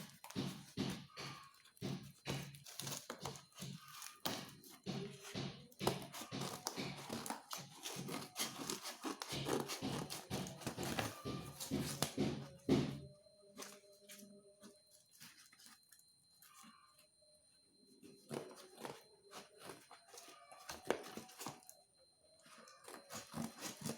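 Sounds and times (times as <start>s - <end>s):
taps and knocks on parcel: 0.0s - 13.9s.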